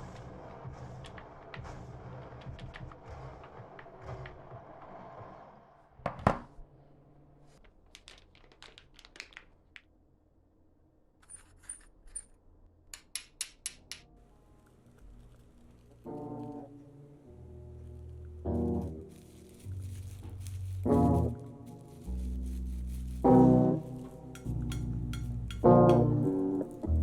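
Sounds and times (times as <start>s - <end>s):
small hard objects clinking: 18.4s - 27.0s.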